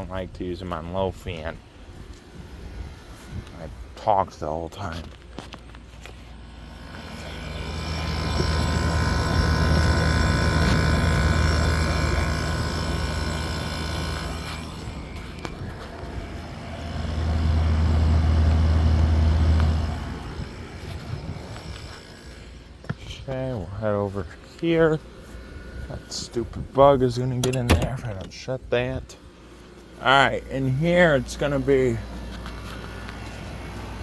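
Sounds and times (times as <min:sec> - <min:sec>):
air conditioner humming: 0:06.3 - 0:34.0.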